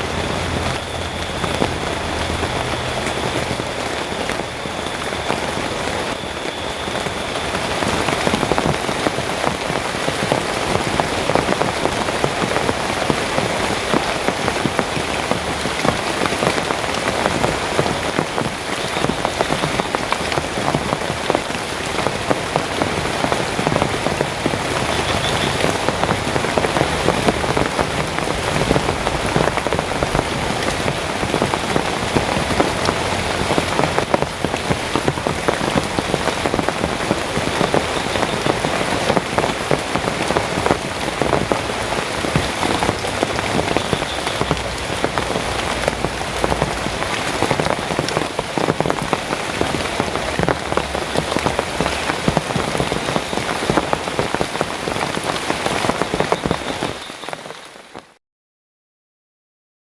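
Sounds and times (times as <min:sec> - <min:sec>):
heavy rain falling: 0:00.0 - 0:58.2
raindrops ticking on a surface: 0:00.0 - 0:58.2.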